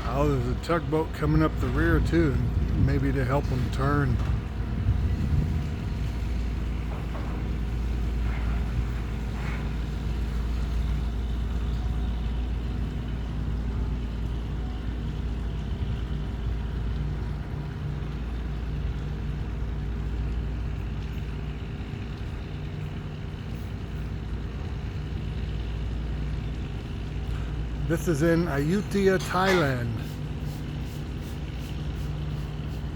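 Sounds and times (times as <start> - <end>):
boat engine droning: 0.0 - 32.9.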